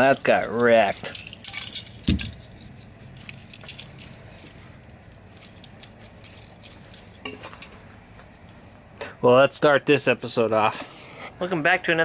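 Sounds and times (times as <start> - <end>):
broken clock pieces clinking: 0.0 - 7.3.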